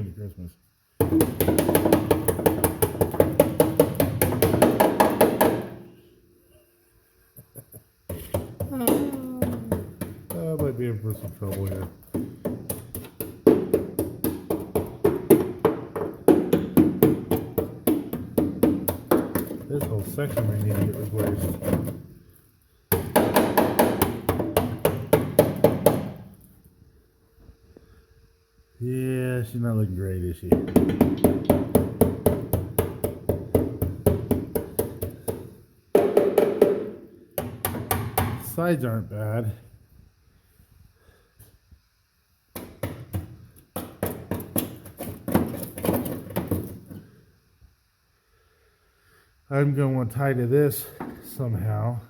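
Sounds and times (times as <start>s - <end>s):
hammer knocking on steel: 30.5s - 38.4s.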